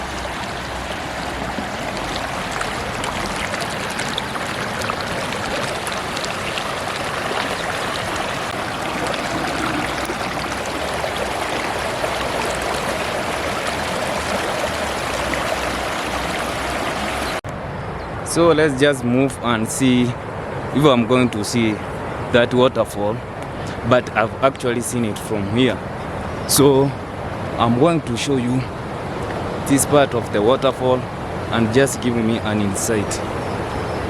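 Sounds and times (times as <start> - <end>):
river water flowing: 0.0 - 17.4, 28.6 - 34.0.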